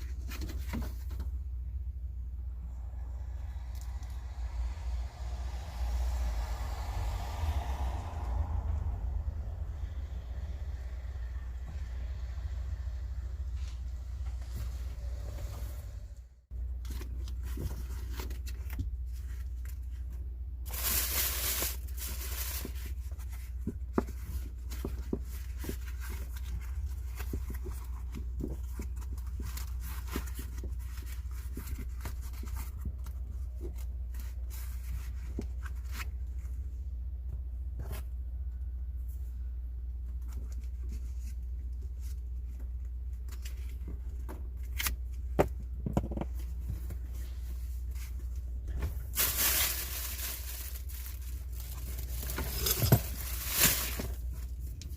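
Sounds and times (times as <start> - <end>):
steady low hum: 0.0 - 54.9.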